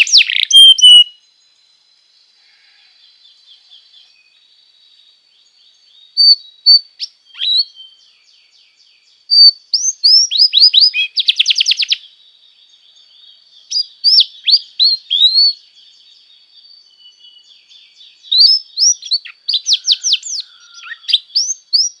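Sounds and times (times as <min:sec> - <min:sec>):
canary singing: 0:00.0 - 0:01.2, 0:05.9 - 0:08.2, 0:09.0 - 0:12.1, 0:12.7 - 0:22.0.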